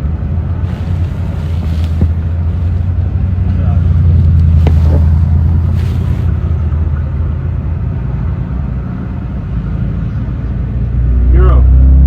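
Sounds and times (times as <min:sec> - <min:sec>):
vehicle low rumble: 0:00.0 - 0:12.0.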